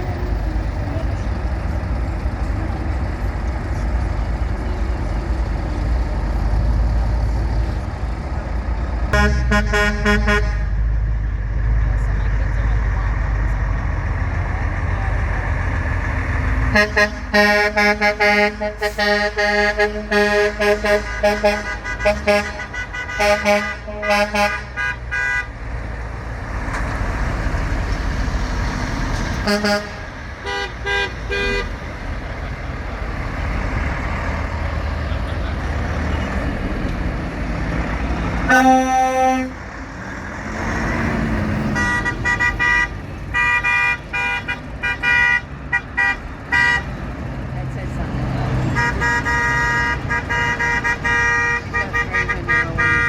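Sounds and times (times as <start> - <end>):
rumble of passing engines: 0.0 - 53.0
truck horns honking: 9.1 - 11.1, 15.8 - 53.0.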